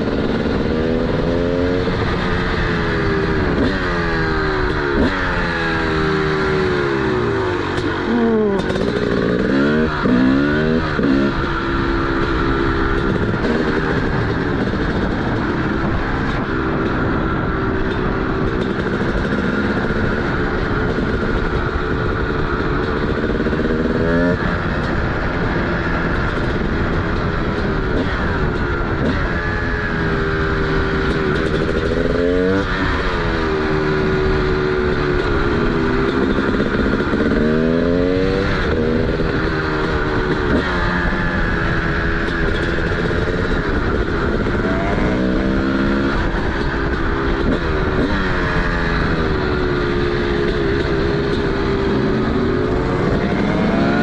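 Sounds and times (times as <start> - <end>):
two-stroke engine accelerating: 0.0 - 54.0.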